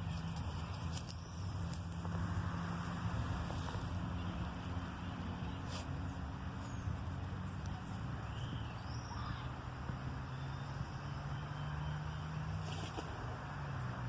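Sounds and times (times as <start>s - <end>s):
faint bird chirps: 8.2s - 9.6s.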